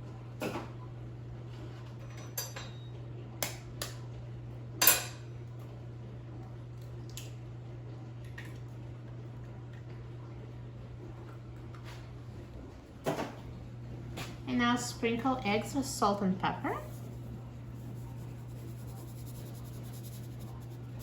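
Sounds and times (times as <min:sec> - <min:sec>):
low hum: 0:14.9 - 0:21.0.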